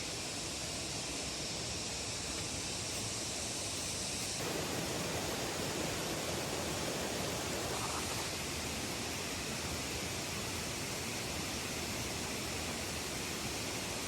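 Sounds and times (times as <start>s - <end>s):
steady rushing noise: 0.0s - 10.8s.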